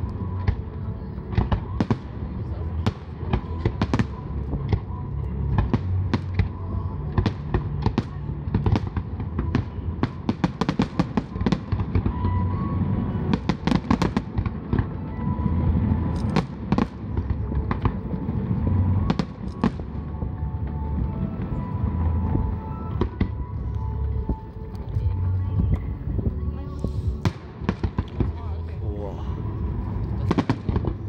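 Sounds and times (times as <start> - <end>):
fireworks bursts and bangs: 0.0 - 31.0
low rumble: 14.6 - 31.0.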